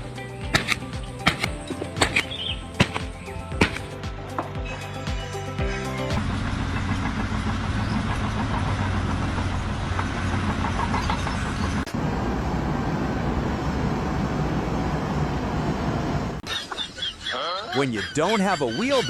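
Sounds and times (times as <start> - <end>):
heavy machine running: 6.1 - 16.4.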